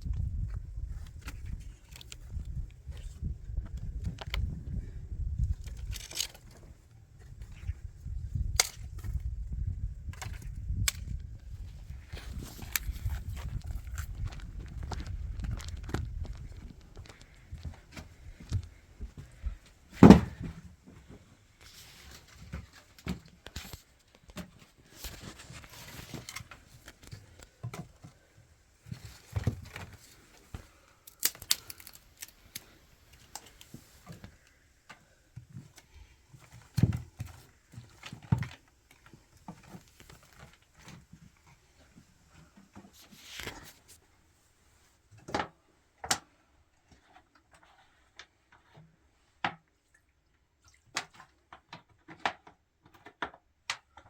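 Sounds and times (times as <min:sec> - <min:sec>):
rustling: 0:11.7 - 0:35.8.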